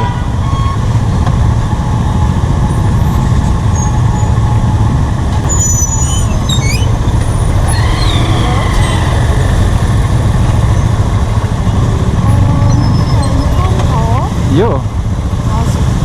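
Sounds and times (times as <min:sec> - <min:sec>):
short high squeaks: 0:00.0 - 0:01.2, 0:02.2 - 0:04.6, 0:05.4 - 0:09.9, 0:12.4 - 0:13.9
vehicle rumble in traffic: 0:00.0 - 0:16.0.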